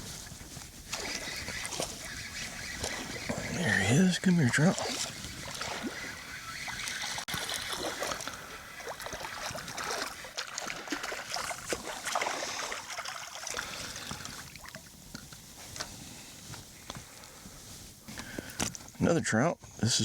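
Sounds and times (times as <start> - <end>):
water splashing and trickling: 0.9 - 15.3.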